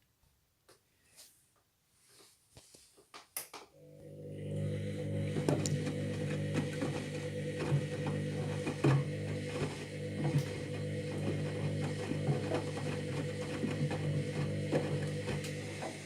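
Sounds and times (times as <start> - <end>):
washing machine pump humming: 3.8 - 16.0.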